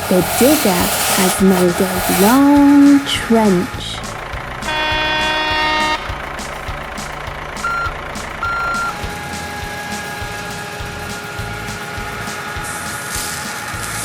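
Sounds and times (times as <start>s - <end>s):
steady thin whine: 0.0s - 4.4s
cartoon truck engine rumble: 0.0s - 14.0s
loud held horn tone: 4.7s - 6.2s.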